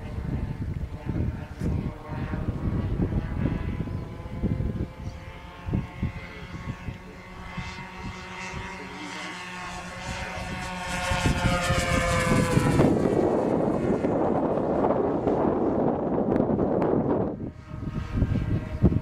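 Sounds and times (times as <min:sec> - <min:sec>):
model plane engines buzzing: 0:00.0 - 0:19.0.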